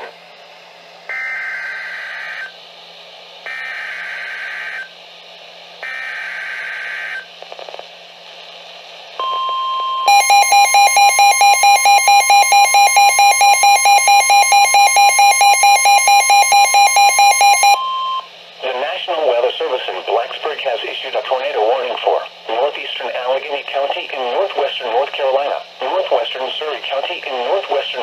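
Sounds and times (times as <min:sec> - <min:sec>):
steady warning alarm tone: 0:01.1 - 0:02.6, 0:03.5 - 0:04.9, 0:05.8 - 0:07.3, 0:09.2 - 0:18.3
loud pulsing alarm beeps: 0:03.5 - 0:04.9, 0:05.8 - 0:07.3, 0:09.2 - 0:18.3
screechy two-tone data bursts: 0:10.1 - 0:17.8.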